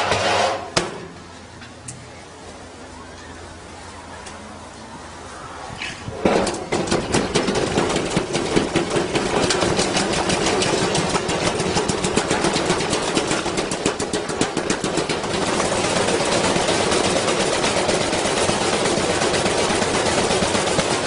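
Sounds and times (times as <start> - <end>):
iron banging in washing machine drum: 6.2 - 21.0.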